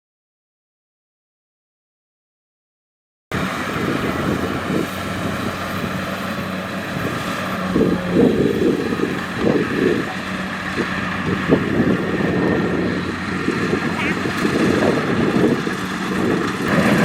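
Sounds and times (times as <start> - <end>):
combine harvester running: 3.3 - 17.0
wind buffeting microphone: 3.3 - 17.0.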